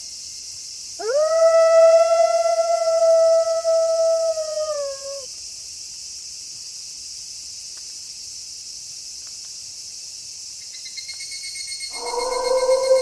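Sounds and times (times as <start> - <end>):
crickets chirring: 0.0 - 13.0
wolf howls: 1.0 - 5.3, 11.9 - 13.0
faint high tones: 11.9 - 13.0.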